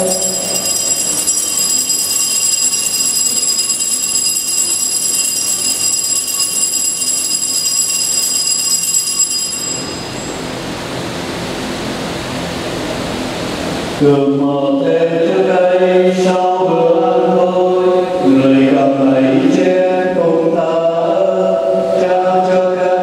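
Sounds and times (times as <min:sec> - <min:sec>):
bells jangling: 0:00.0 - 0:10.5.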